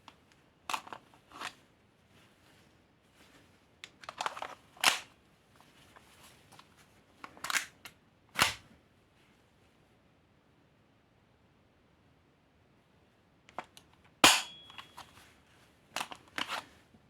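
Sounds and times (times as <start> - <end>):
pistol snap: 14.2 - 14.9.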